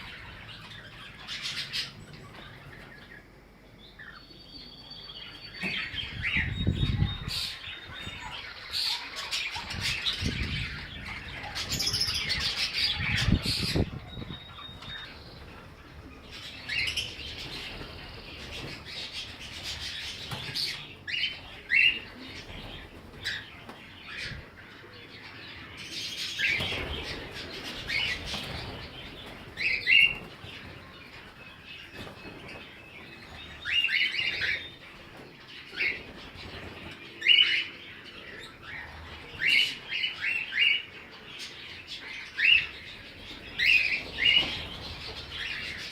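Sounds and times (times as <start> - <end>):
wings flapping: 26.4 - 37.0, 43.3 - 45.9.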